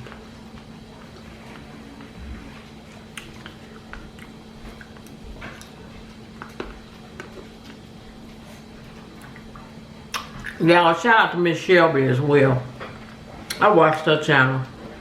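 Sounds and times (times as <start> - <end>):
person chewing: 0.0 - 10.6
wet mouth clicks and smacks: 10.1 - 10.6.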